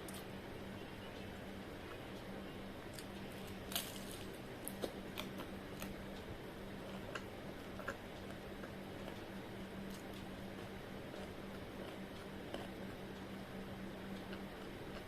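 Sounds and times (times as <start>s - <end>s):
steady low hum: 0.0s - 15.0s
person chewing and crunching: 2.9s - 13.0s.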